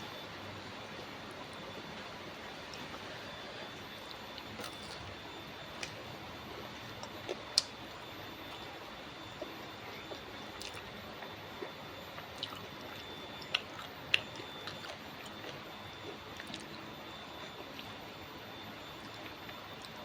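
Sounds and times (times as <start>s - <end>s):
wet chewing: 4.1s - 5.1s, 9.3s - 18.1s.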